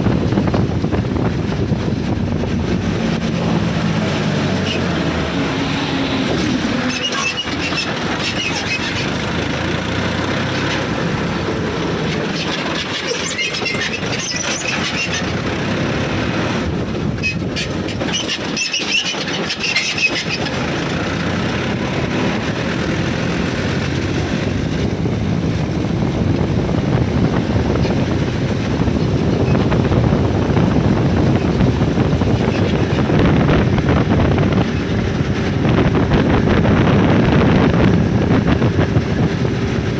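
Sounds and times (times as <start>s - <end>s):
diesel vehicle running: 0.0s - 39.9s
short high squeaks: 5.9s - 9.2s, 12.2s - 15.4s, 17.2s - 20.6s.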